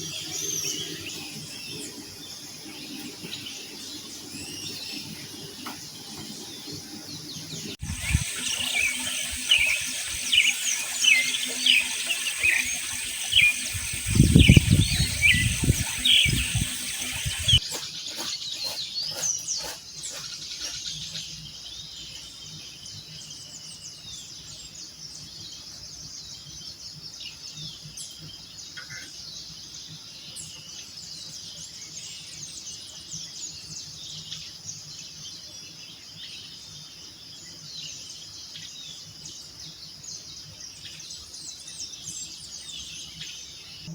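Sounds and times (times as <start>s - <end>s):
small birds chirping: 0.0s - 22.8s
high insect drone: 7.8s - 17.6s.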